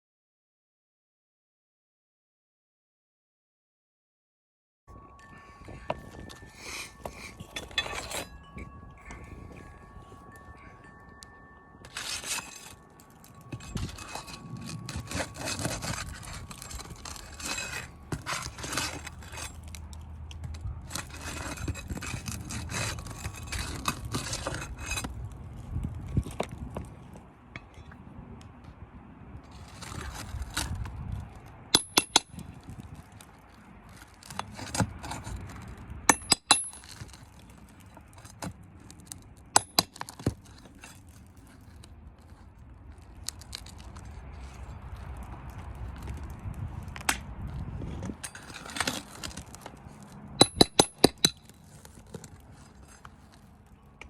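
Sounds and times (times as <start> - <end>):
sharp metallic clinks: 5.0 - 18.4, 50.4 - 51.5
metal tool scraping roof shingles: 5.9 - 10.2, 11.8 - 19.9, 20.8 - 25.2, 29.5 - 30.9, 33.9 - 46.3, 47.9 - 53.5.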